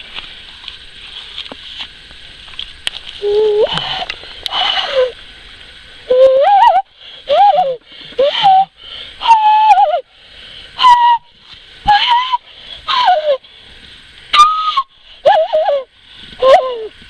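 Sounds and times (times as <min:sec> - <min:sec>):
person whistling to a bird: 0:06.1 - 0:10.0
breathy hooting whistles: 0:06.1 - 0:10.1, 0:10.8 - 0:11.3, 0:14.3 - 0:16.9.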